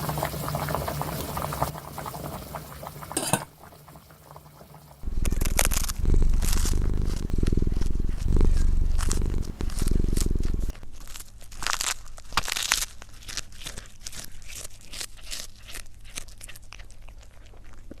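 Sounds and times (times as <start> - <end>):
low bubbling boiling noise: 0.0 - 10.7
crackling and crinkling: 5.0 - 18.0.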